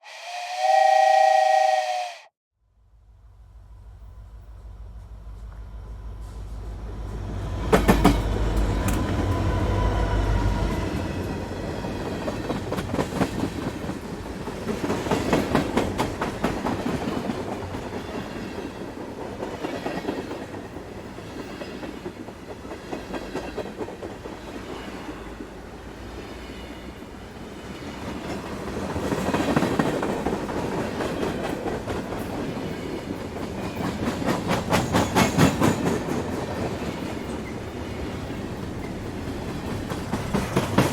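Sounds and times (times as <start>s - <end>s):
train wheels clattering over rail joints: 28.1s - 40.9s.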